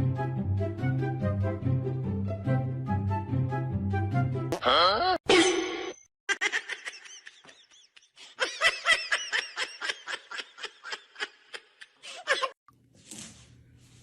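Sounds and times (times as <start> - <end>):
person laughing: 6.3 - 12.6.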